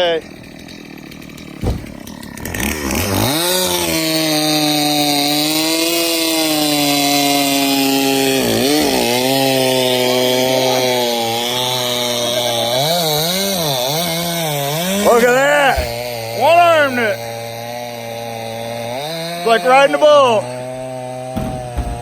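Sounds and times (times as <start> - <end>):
chainsaw revving through logs: 0.0 - 22.0
thump: 1.6 - 2.3, 14.8 - 16.1, 21.4 - 22.0.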